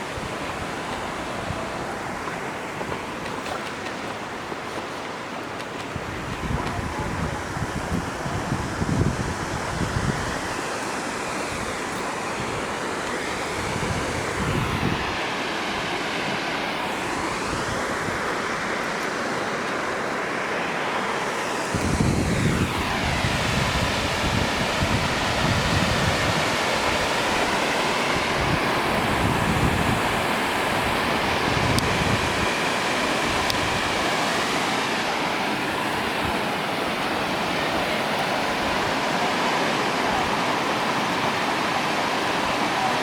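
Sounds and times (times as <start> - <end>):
water rushing over spillway: 0.0 - 43.0
wind buffeting microphone: 5.8 - 15.9, 21.7 - 34.8.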